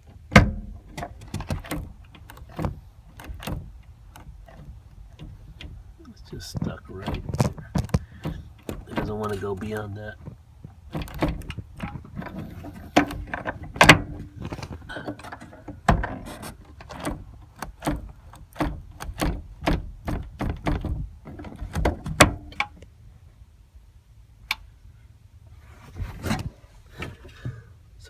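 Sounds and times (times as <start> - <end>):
liftgate latch clicking: 0.0 - 5.8, 10.9 - 22.8.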